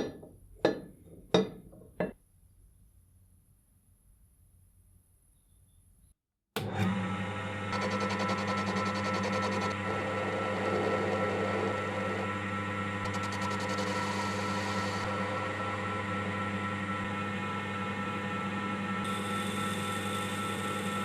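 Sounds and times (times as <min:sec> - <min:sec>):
power tool motor humming: 0:07.7 - 0:21.0.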